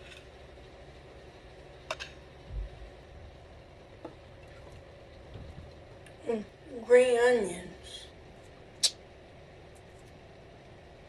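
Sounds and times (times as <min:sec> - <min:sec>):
soft low thump: 0:02.5 - 0:02.9.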